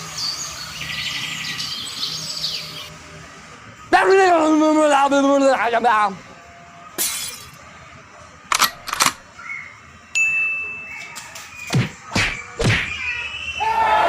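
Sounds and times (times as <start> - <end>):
sharp clicks: 8.5 - 9.2.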